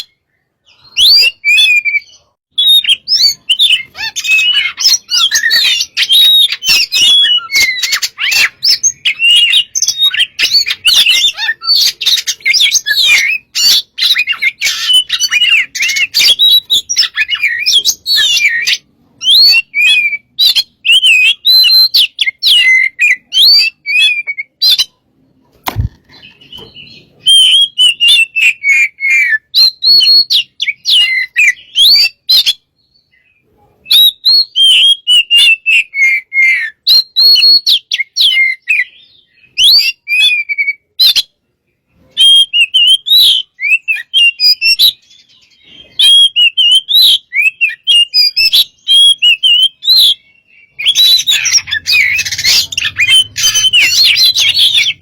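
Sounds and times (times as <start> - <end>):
bird singing: 0.0 - 55.0
dull thump: 25.6 - 26.0.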